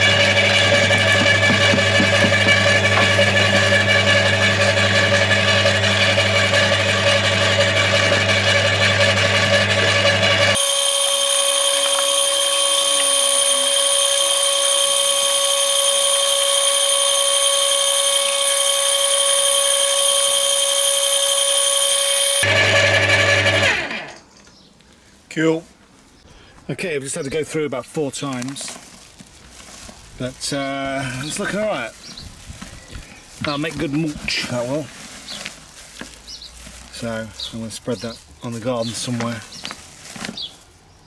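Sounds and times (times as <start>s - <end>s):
electric garden shredder whining: 0.0s - 24.3s.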